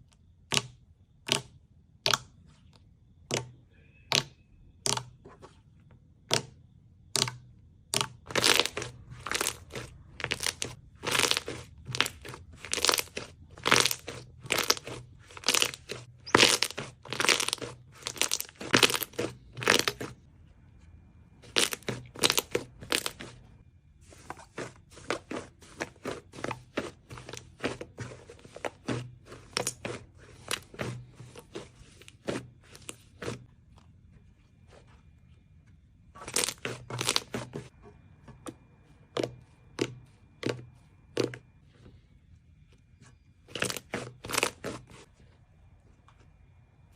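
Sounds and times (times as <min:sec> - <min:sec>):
slime crackling and popping: 0:08.3 - 0:20.0.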